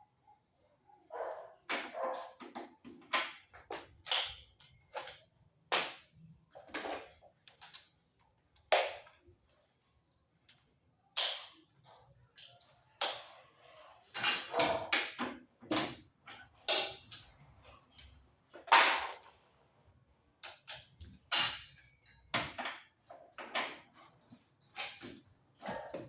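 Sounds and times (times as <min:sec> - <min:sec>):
metal tools knocking and clattering: 0:01.7 - 0:08.2, 0:14.1 - 0:24.1.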